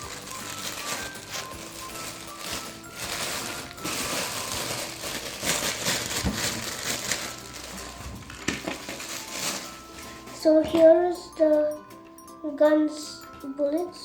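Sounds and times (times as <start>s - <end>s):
plastic packet rustling: 0.0s - 10.8s.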